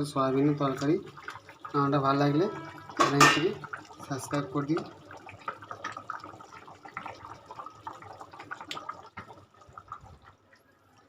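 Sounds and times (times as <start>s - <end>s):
faint dripping: 0.0s - 11.0s
small liquid clicks: 3.0s - 11.0s.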